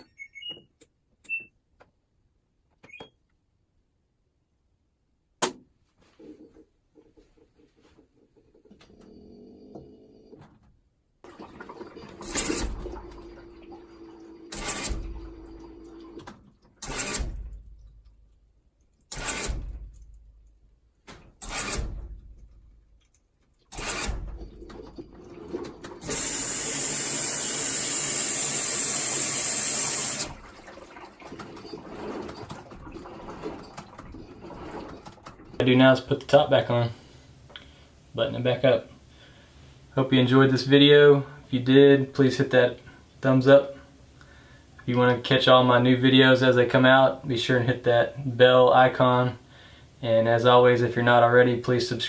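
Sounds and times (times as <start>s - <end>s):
water rushing through fill valve: 6.9s - 10.4s, 11.2s - 17.8s, 23.7s - 36.4s
washing machine clunks: 11.3s - 17.6s, 23.7s - 27.0s, 29.8s - 35.7s.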